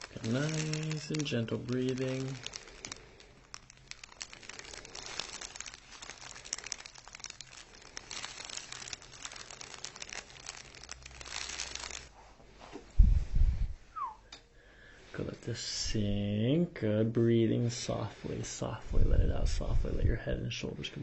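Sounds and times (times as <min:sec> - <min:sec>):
material crinkling and rustling: 0:00.0 - 0:12.9.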